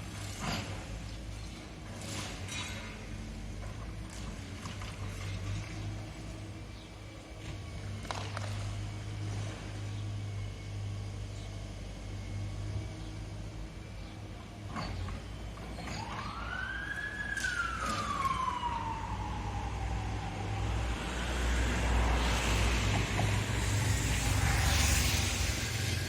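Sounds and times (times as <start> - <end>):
rising and falling whine: 16.4 - 26.0.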